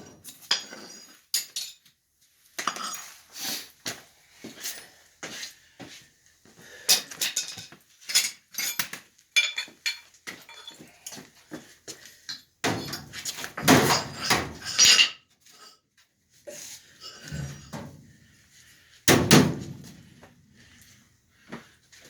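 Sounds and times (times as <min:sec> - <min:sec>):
metal tools clanking: 0:07.2 - 0:10.9, 0:12.8 - 0:15.2.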